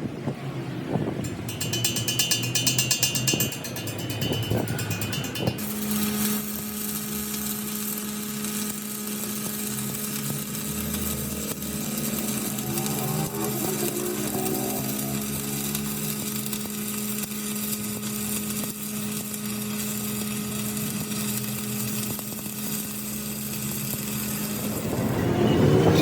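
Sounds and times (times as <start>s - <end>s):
power tool humming: 1.4s - 26.0s.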